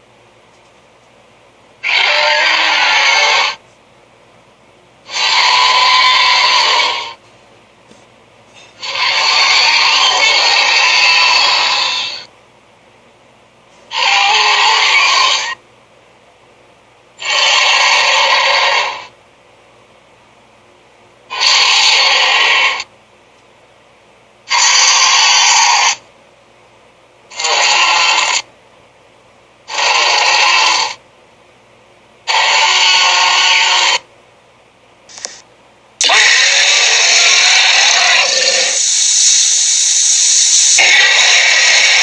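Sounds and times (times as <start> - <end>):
cartoon scraping sound effects: 36.0 - 42.0.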